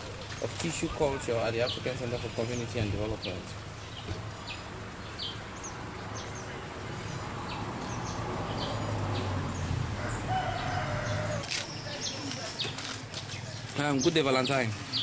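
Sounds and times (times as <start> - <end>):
small birds chirping: 0.0 - 15.0
rooster crowing: 10.0 - 11.5.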